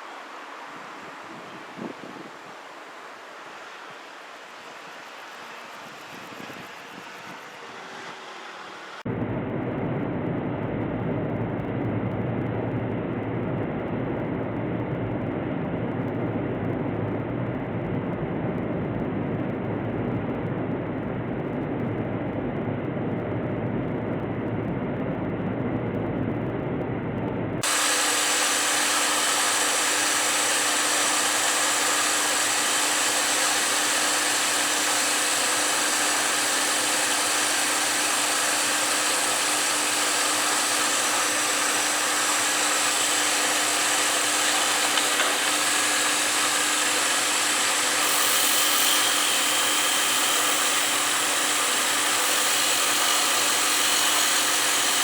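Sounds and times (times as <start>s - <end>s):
low rumble: 9.1s - 27.6s
high hiss of cutting: 27.6s - 55.0s
metal lathe humming: 27.6s - 55.0s.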